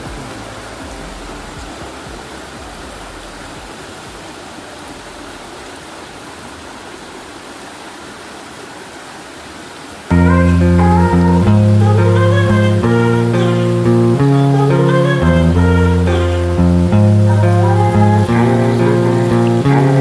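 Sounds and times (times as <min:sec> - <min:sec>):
running water rushing: 0:00.0 - 0:20.0
acoustic guitar music: 0:10.1 - 0:20.0.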